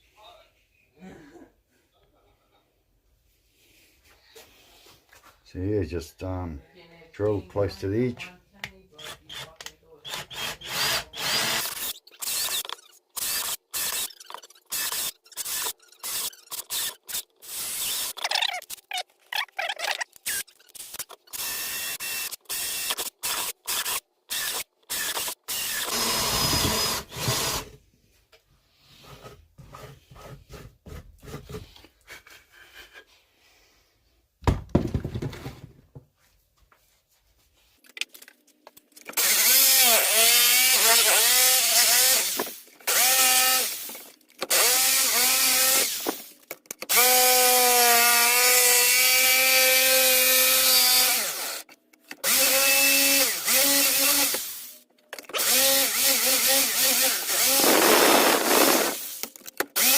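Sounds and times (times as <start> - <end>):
power drill boring into wood: 9.0 - 18.7, 20.2 - 27.8, 39.1 - 54.7, 55.3 - 59.9.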